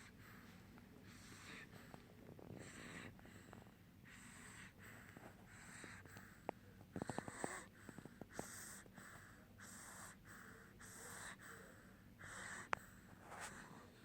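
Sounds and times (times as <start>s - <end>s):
baby snoring softly: 0.0s - 0.4s, 1.0s - 14.0s.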